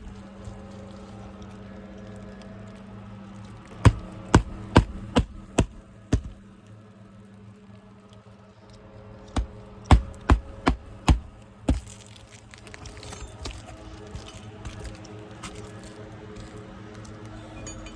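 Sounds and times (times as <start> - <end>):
low steady hum: 0.0 - 7.0, 9.3 - 17.9
sharp hammer blows: 3.9 - 6.4.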